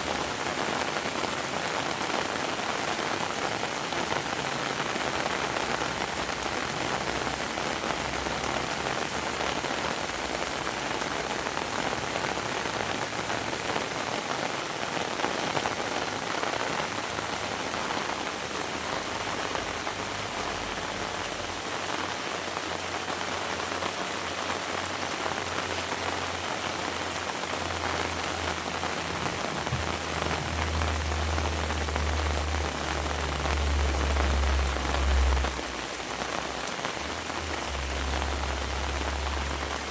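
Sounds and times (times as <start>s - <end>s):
heavy rain: 0.0s - 39.9s
low rumble: 27.7s - 35.8s.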